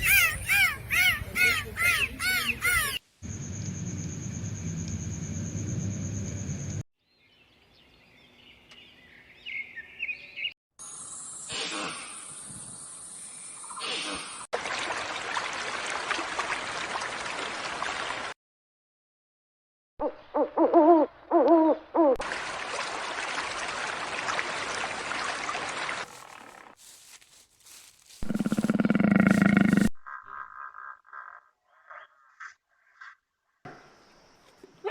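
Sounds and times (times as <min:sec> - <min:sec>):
short pitched animal calls: 0:28.2 - 0:30.4.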